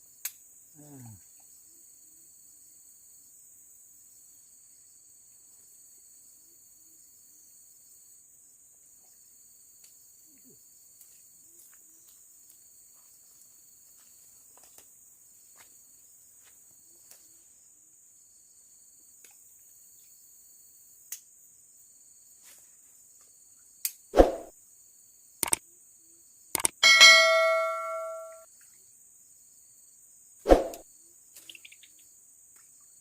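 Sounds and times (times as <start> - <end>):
insects droning: 0.0 - 27.7, 28.5 - 33.0
faint clicks: 26.6 - 26.8
sharp click: 26.6 - 28.4.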